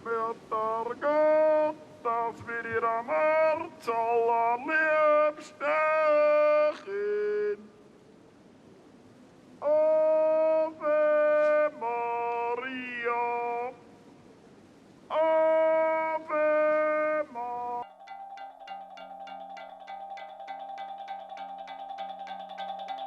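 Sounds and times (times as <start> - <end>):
melody of held sung notes: 15.2 - 23.0.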